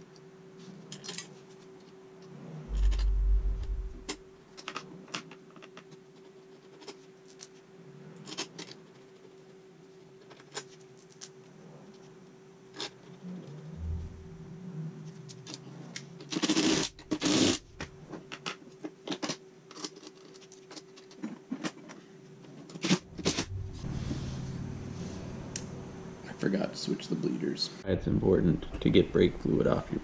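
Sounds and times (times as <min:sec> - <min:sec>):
faint steady hum: 0:00.0 - 0:19.7
heavy low thump: 0:02.7 - 0:04.2, 0:13.8 - 0:14.4, 0:23.1 - 0:24.8.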